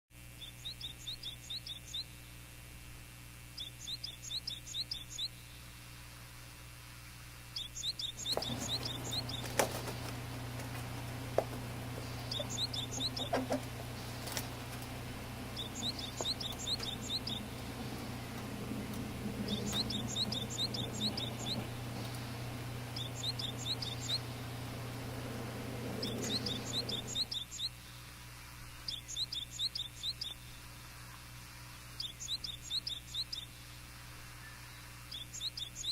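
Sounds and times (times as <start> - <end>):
low steady hum: 0.2 - 35.4
high bird chirps: 7.6 - 27.8.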